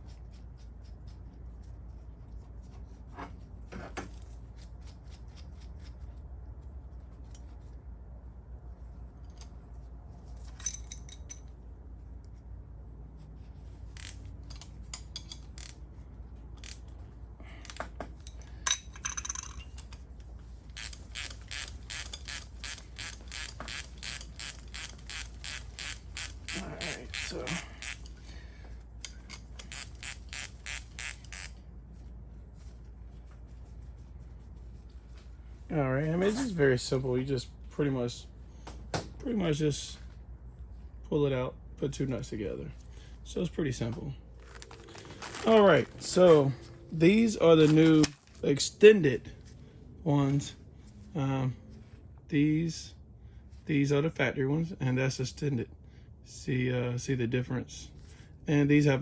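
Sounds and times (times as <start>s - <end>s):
metal tools clicking and knocking: 10.5s - 11.5s, 14.0s - 15.8s, 17.6s - 20.0s, 20.8s - 28.2s, 44.4s - 46.4s, 47.5s - 48.5s
ratchet wrench ratcheting: 13.9s - 15.8s, 16.6s - 17.0s, 20.8s - 28.2s, 29.1s - 31.6s, 44.4s - 46.2s.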